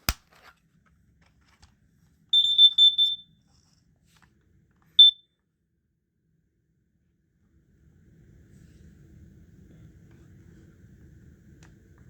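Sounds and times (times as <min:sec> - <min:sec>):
smoke alarm short high beeps: 0:02.4 - 0:03.4, 0:05.0 - 0:05.3.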